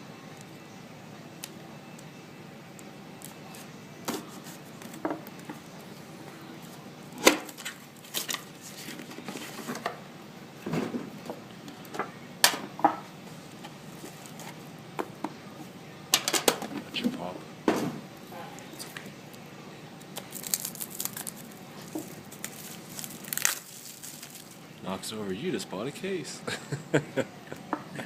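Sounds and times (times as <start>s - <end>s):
card packaging handled: 20.1s - 24.6s.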